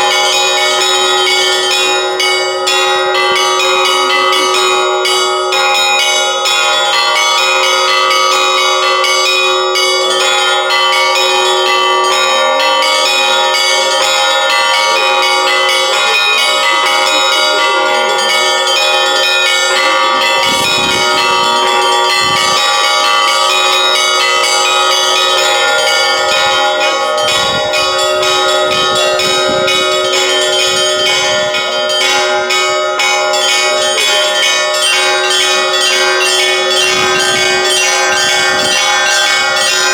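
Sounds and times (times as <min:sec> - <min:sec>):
large bells humming: 0:00.0 - 0:39.9
small church bells pealing: 0:00.0 - 0:39.9.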